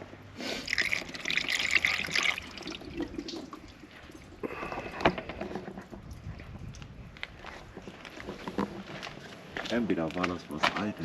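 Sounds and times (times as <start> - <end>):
water pouring and splashing on car: 0.5 - 6.3.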